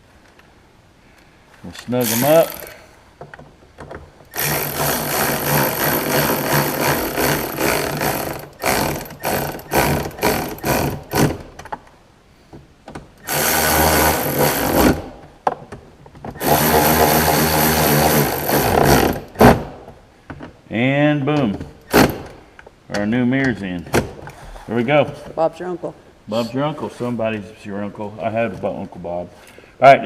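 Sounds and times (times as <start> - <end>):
power tool running in bursts: 2.0 - 2.8, 4.3 - 11.3, 13.3 - 15.1, 16.4 - 19.3.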